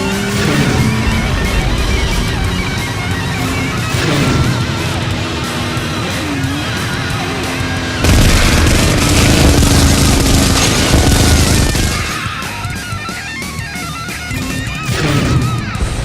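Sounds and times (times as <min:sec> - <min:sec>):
background music: 0:00.0 - 0:16.0
gunfire and booms: 0:08.0 - 0:12.4.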